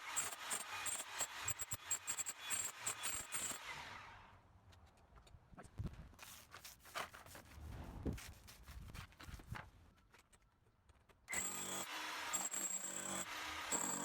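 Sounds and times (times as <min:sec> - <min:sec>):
knocks and scrapes: 0:04.7 - 0:11.2
rotary hammer motor whine: 0:11.3 - 0:14.0.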